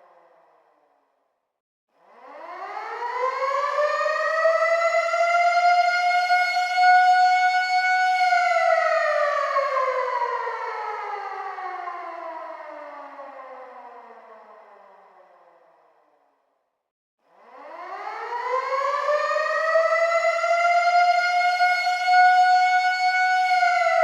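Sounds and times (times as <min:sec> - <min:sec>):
air raid siren wailing: 0:02.3 - 0:14.7, 0:17.6 - 0:24.0.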